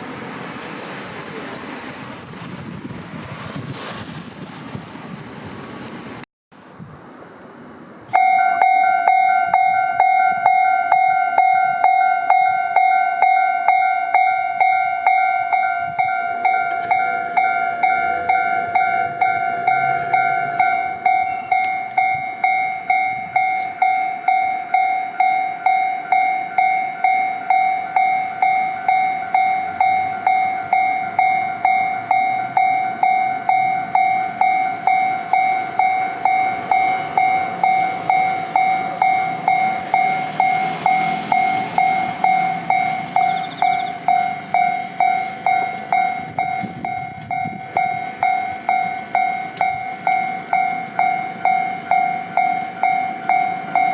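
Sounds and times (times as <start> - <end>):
level crossing warning bell ringing: 8.1 - 53.9.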